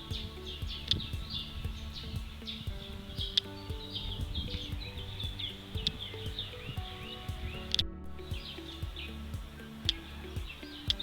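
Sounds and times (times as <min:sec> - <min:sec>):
soft background music: 0:00.0 - 0:11.0.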